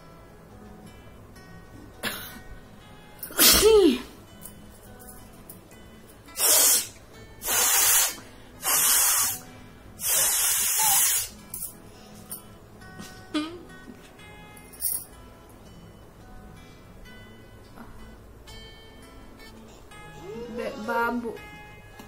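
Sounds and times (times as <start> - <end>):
woman sneezing: 3.3 - 4.1
forceful snorts through nose: 6.4 - 9.4.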